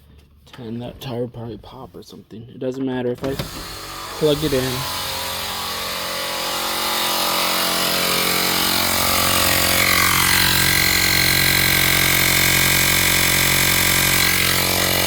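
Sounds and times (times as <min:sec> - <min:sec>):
air compressor running: 0:03.2 - 0:15.0
high-pitched whine: 0:03.3 - 0:12.2.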